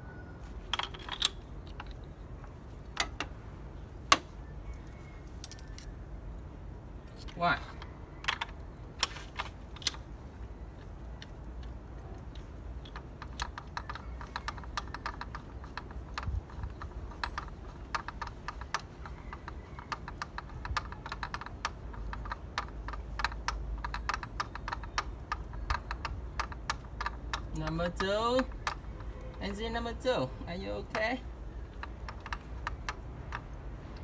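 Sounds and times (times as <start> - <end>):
ratchet wrench clicking: 12.8 - 28.9.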